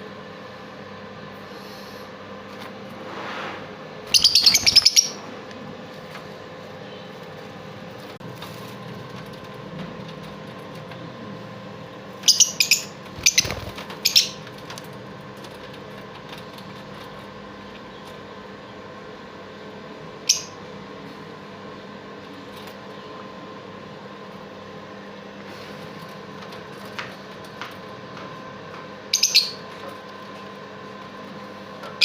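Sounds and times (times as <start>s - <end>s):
steady background hum: 0.0s - 32.0s
sharp bird calls: 4.1s - 5.2s, 12.3s - 14.4s.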